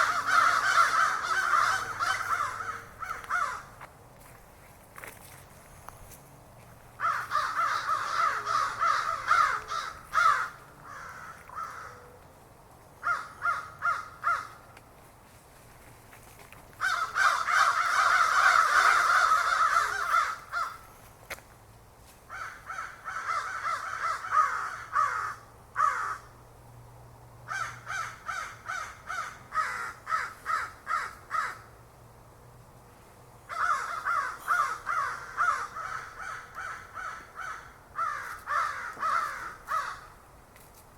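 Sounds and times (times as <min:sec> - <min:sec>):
crows cawing: 0:00.0 - 0:03.8, 0:07.0 - 0:12.1, 0:13.0 - 0:14.7, 0:16.8 - 0:21.0, 0:22.3 - 0:26.4, 0:27.5 - 0:31.8, 0:33.5 - 0:40.2.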